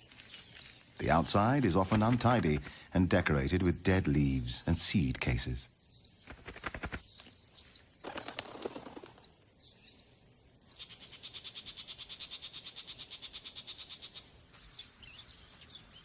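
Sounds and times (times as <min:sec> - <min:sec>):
songbirds chirping: 0:00.0 - 0:16.0.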